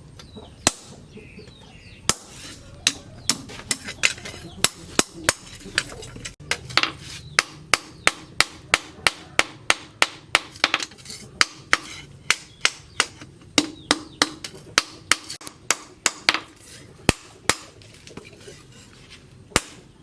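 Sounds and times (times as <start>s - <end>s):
hammer striking steel on anvil: 2.1s - 5.9s, 6.5s - 17.8s, 19.6s - 19.8s.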